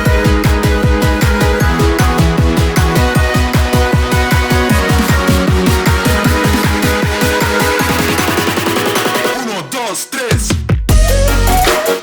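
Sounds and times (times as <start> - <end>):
electronic music with bass beat: 0.0 - 12.0.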